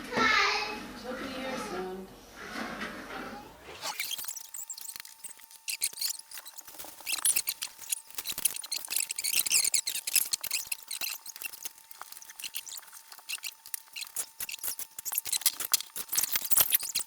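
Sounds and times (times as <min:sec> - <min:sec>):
plastic blocks clicking and rattling: 0:04.0 - 0:17.0.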